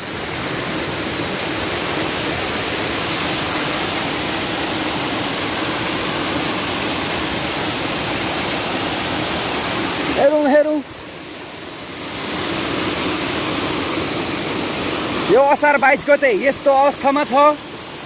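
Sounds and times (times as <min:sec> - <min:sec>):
flood water rushing: 0:00.0 - 0:18.0.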